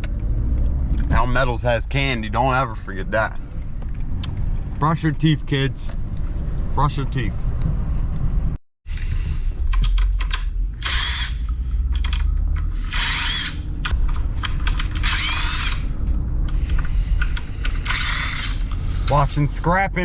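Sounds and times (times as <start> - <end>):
steady low rumble: 0.0 - 20.0
power drill bursts: 10.8 - 11.4, 12.8 - 13.5, 15.0 - 15.8, 17.8 - 18.6.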